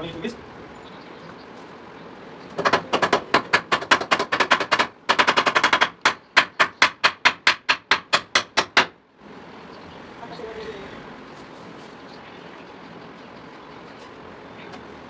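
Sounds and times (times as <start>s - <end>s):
rapid hammer blows: 2.6s - 9.0s.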